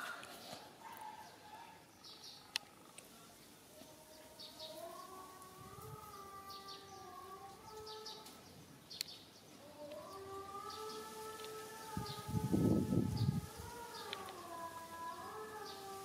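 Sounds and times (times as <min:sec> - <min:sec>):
bird chirps: 0:00.0 - 0:03.0.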